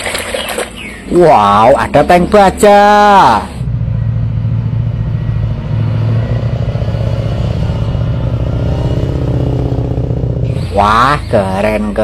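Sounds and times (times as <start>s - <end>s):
tank engine throbbing: 1.6s - 11.2s.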